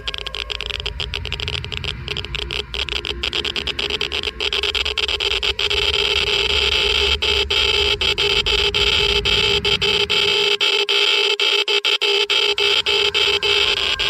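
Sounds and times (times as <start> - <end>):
geiger counter crackling: 0.0 - 14.0.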